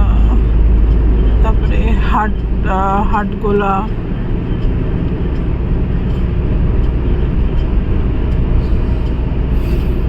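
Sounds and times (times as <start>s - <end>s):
car road and engine rumble: 0.0s - 10.0s.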